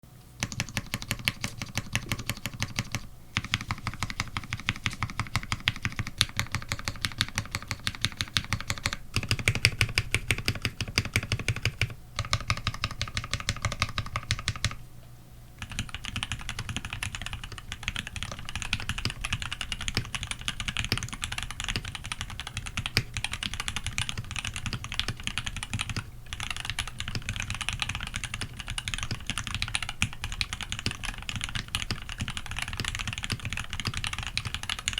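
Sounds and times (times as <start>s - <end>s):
typing on mechanical keyboard: 0.4s - 14.8s, 15.6s - 34.9s.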